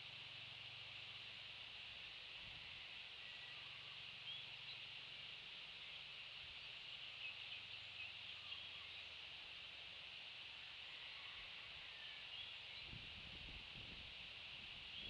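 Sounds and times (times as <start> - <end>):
steady high hiss: 0.0 - 15.0
faint bird chirps: 2.4 - 9.3, 10.9 - 13.0, 14.7 - 15.0.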